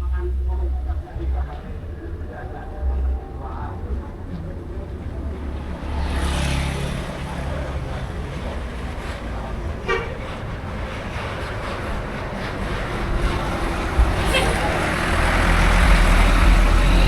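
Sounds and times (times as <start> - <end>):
bus engine running: 0.0 - 17.0
bus horn toot: 9.8 - 10.5, 14.0 - 17.0.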